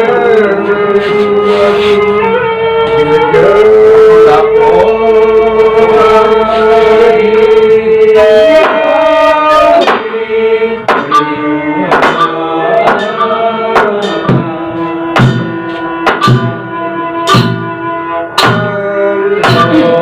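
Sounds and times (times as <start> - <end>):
sharp percussive strikes: 6.0 - 20.0
gamelan ensemble playing: 11.0 - 20.0.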